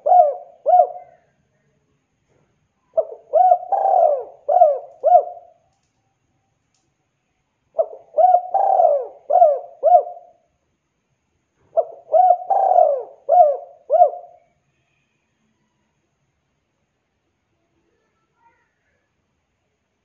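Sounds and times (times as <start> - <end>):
dove cooing: 0.0 - 1.3, 2.9 - 5.6, 7.8 - 10.4, 11.7 - 14.4.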